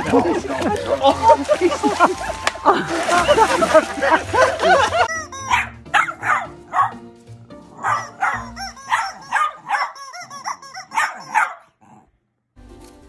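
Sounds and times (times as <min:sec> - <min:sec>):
background music: 0:00.0 - 0:11.6, 0:12.6 - 0:13.0
dog barking: 0:05.4 - 0:07.0, 0:07.7 - 0:12.0.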